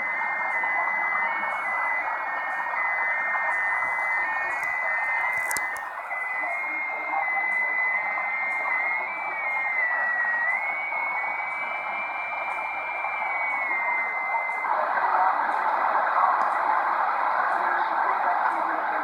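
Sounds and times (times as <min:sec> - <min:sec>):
high whistling tone: 0:00.0 - 0:14.6
radio static hiss: 0:00.0 - 0:19.0.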